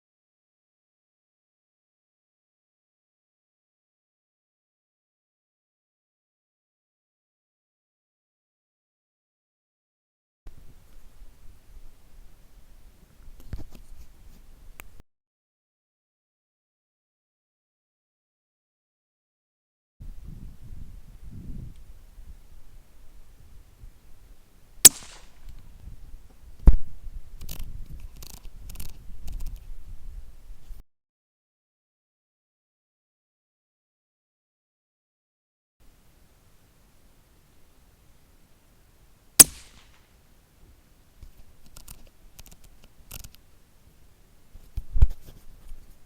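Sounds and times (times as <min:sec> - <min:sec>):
rifle shot: 0:24.8 - 0:25.6, 0:39.4 - 0:40.0
faint clicks: 0:41.2 - 0:43.4.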